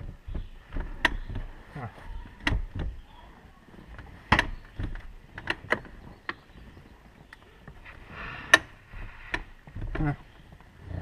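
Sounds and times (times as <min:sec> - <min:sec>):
clicks and knocks of car fittings: 0:00.0 - 0:03.1, 0:03.8 - 0:06.4, 0:08.5 - 0:10.2.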